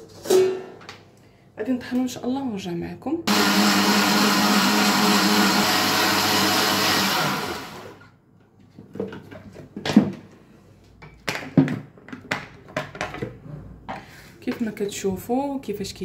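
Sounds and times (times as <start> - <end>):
blender running: 3.3 - 8.1.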